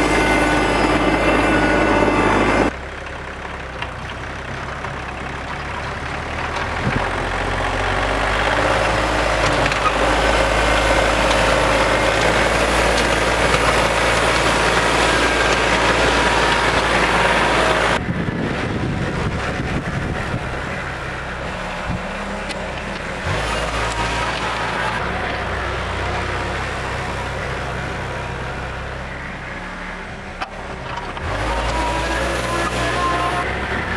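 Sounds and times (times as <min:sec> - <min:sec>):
tractor engine running: 0:00.0 - 0:33.9.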